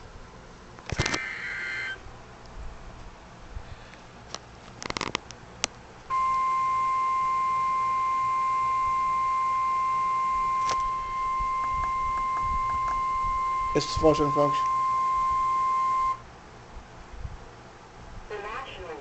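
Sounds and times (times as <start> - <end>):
sharp clicks: 0.8 - 1.4
emergency alert warning tone: 1.2 - 2.0, 6.1 - 16.2.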